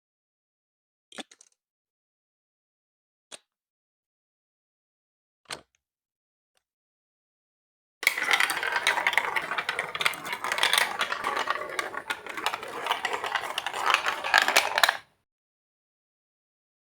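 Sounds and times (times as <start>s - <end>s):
marbles clattering down plastic track: 8.0s - 15.0s.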